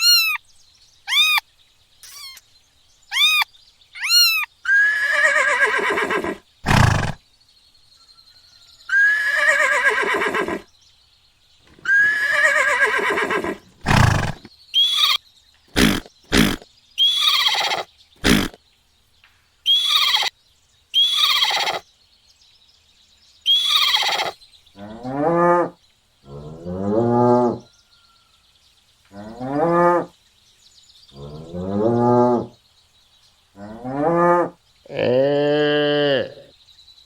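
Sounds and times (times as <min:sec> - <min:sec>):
short high-pitched cries: 0:00.0 - 0:00.4, 0:01.1 - 0:01.4, 0:02.0 - 0:02.4, 0:03.1 - 0:05.2, 0:14.8 - 0:15.2, 0:15.8 - 0:18.5, 0:19.7 - 0:20.3, 0:21.0 - 0:21.8, 0:23.5 - 0:24.4.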